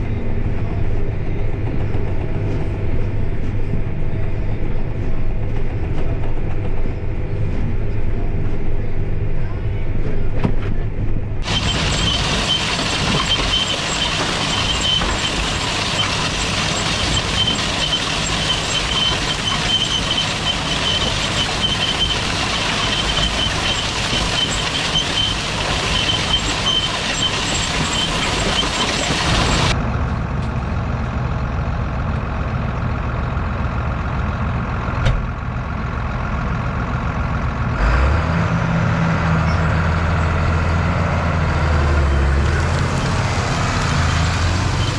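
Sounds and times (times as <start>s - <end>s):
tractor diesel engine under load: 11.2s - 44.9s.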